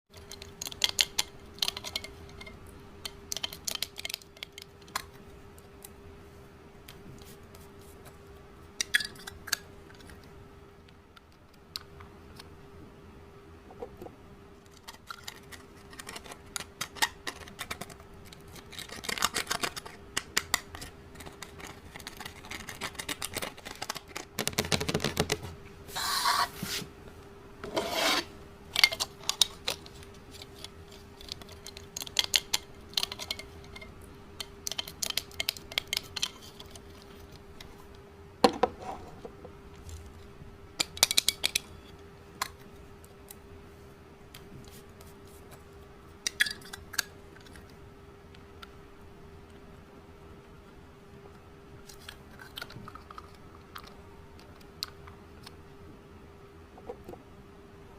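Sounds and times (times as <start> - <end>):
faint steady hum: 0.1 - 57.9
makeup scraping: 27.6 - 28.4.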